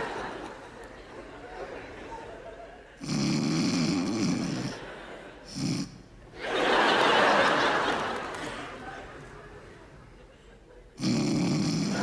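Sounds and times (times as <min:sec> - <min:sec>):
audience laughter: 0:00.0 - 0:03.1, 0:04.7 - 0:05.6, 0:06.2 - 0:11.0
loud rattling snoring: 0:03.0 - 0:04.8, 0:05.5 - 0:06.0, 0:11.0 - 0:12.0.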